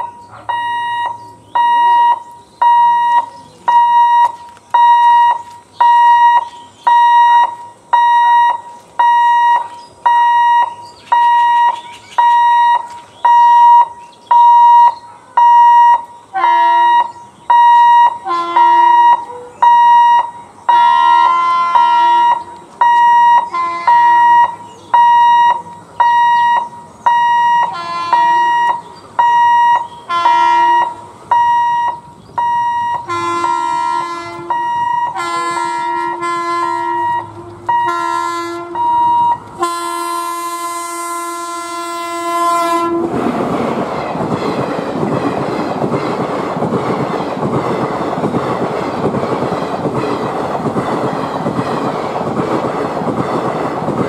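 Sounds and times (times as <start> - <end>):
level crossing alarm beeping: 0.0 - 39.5
horn-like tones: 0.0 - 43.3.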